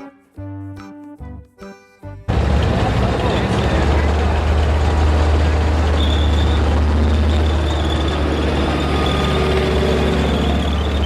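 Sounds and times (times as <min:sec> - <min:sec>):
loud machine hum: 0:02.3 - 0:11.0.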